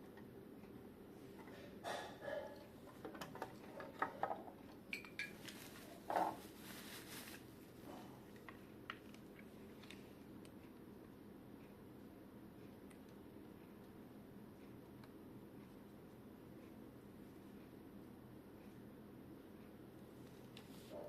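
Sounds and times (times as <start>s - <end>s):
steady low hum: 0.0s - 4.8s, 5.6s - 21.0s
packaging rustle: 5.4s - 7.5s.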